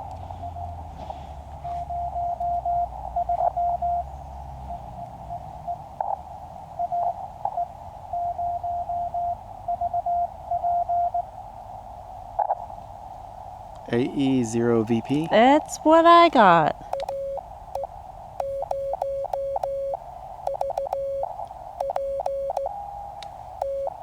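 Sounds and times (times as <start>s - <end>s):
morse code tone: 1.7s - 5.8s, 15.6s - 24.0s
receiver hiss: 2.4s - 24.0s.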